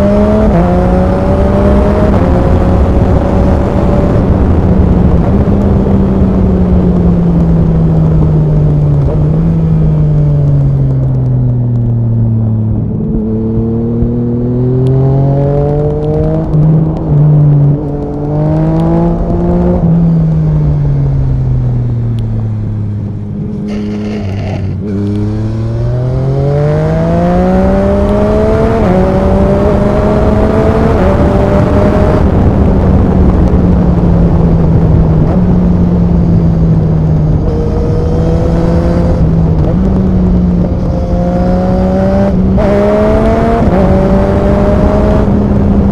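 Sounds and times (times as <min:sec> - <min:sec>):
motorcycle engine revving: 0:00.0 - 0:11.2, 0:23.2 - 0:45.9.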